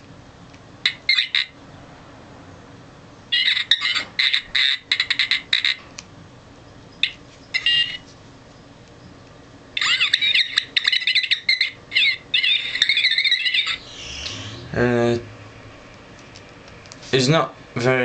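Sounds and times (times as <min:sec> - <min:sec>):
toy robot beeps and boops: 0:03.4 - 0:05.8, 0:07.6 - 0:08.0, 0:09.8 - 0:14.6
warbling electronic whistles: 0:09.9 - 0:15.2.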